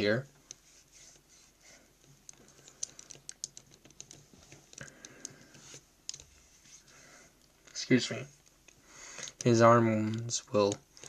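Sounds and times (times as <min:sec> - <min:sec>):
plastic model joints clicking: 0:02.2 - 0:06.3.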